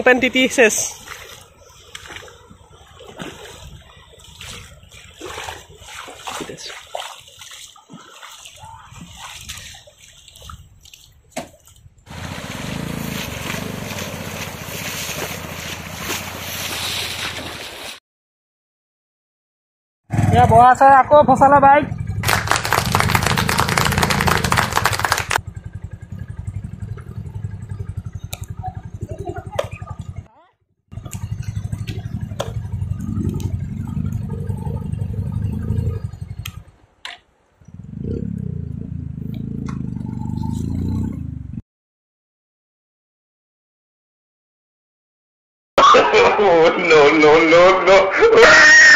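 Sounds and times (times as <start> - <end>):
motorcycle engine running: 12.1 - 17.2, 20.1 - 36.7, 37.7 - 41.6.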